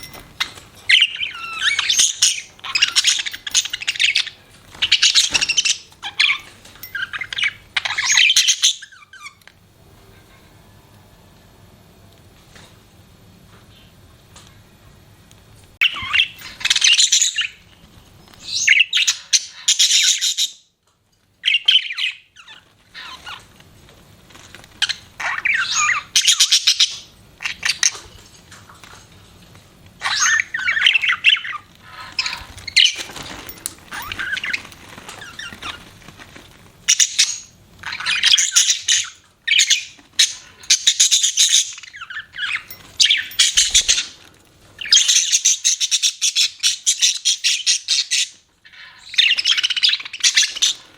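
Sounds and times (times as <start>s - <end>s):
budgerigars chirping: 0.4s - 9.4s, 15.8s - 17.6s, 18.4s - 20.6s, 21.4s - 23.4s, 24.8s - 28.0s, 30.0s - 35.9s, 36.8s - 44.2s, 44.8s - 50.9s.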